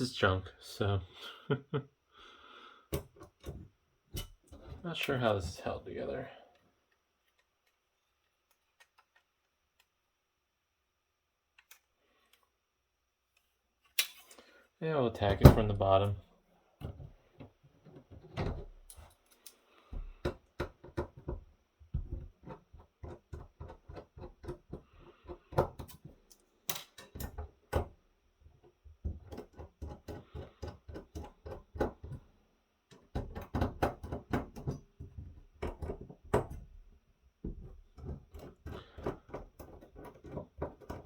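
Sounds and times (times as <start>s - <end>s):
small clicks and taps on metal: 11.5s - 12.4s, 22.0s - 32.2s, 32.9s - 36.8s, 37.4s - 41.0s.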